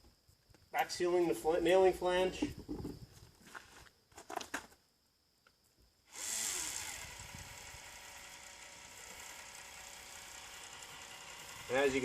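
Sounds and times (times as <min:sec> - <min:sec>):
small motor running: 0:06.1 - 0:12.0.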